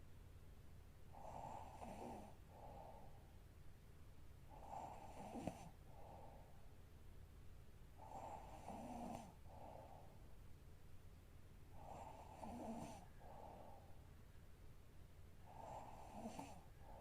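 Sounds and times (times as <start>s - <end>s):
woman snoring faintly: 8.0s - 9.4s, 11.8s - 13.8s, 15.5s - 17.0s.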